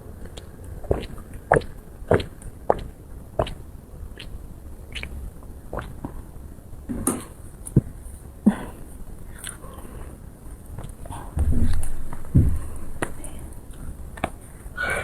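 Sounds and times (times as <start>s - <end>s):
person chewing food: 0.1s - 6.3s
wet mouth clicks and smacks: 0.2s - 6.2s, 9.4s - 9.6s.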